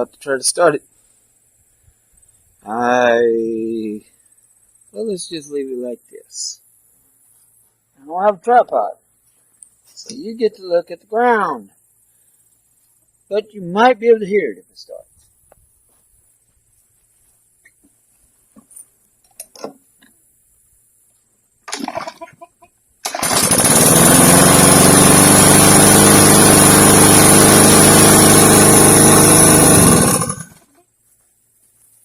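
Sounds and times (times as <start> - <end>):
recoil starter rattling pull: 21.7 - 22.3, 23.0 - 30.7
lawn mower engine running: 21.7 - 30.8.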